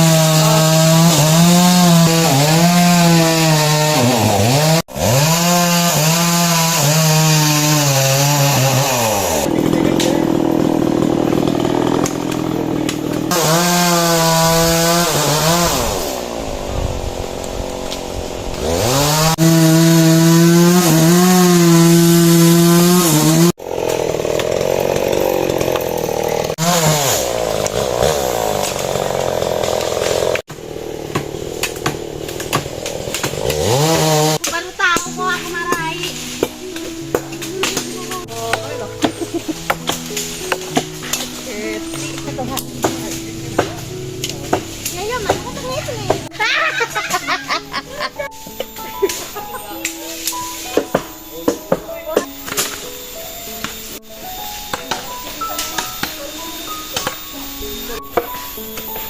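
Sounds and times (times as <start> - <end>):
two-stroke engine tool running: 7.8 - 16.4, 17.5 - 34.4.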